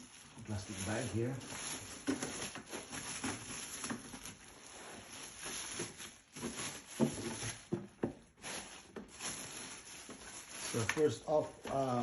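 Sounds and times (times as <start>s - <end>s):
plastic bag rustling: 0.0s - 12.0s.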